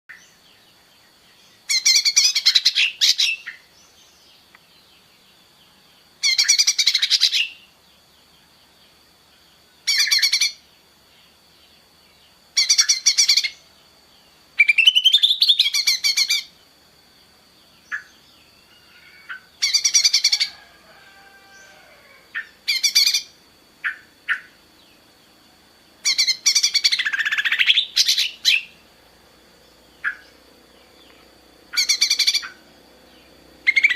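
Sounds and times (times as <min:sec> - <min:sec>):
faint high-pitched whine: 0:00.1 - 0:33.9
bird chattering harshly: 0:26.0 - 0:28.7, 0:31.8 - 0:32.6.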